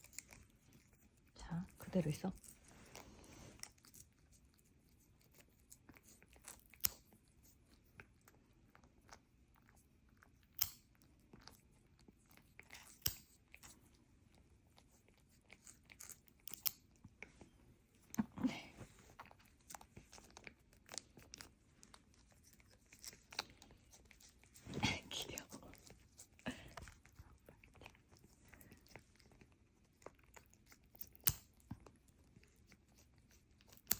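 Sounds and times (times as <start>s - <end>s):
soft rustle: 0.0s - 5.2s, 17.0s - 29.8s.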